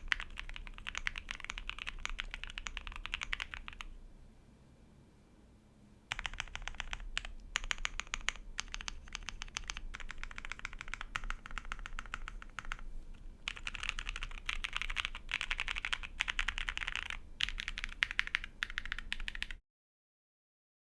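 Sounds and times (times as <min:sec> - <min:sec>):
typing on mechanical keyboard: 0:00.0 - 0:03.9, 0:06.1 - 0:12.9, 0:13.5 - 0:19.6.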